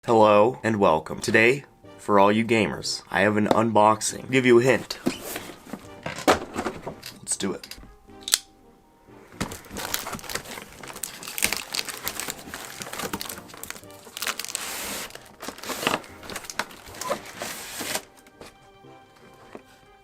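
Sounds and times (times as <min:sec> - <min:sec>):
handling scrapes and knocks: 0:04.6 - 0:07.8, 0:09.3 - 0:19.9
packaging crinkling and rustling: 0:09.4 - 0:18.6.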